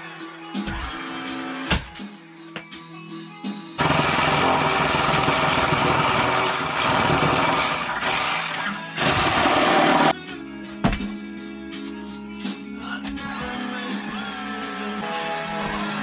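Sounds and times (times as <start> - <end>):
background music: 0.0 - 16.0
power tool running: 3.8 - 10.1.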